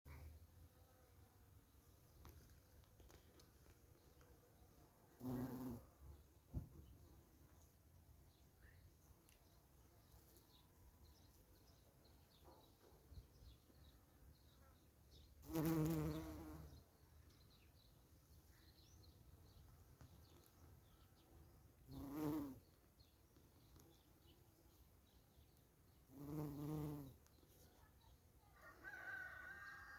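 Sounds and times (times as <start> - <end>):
flying insect buzzing: 5.1 - 5.9, 15.4 - 16.8, 21.9 - 22.6, 26.1 - 27.2.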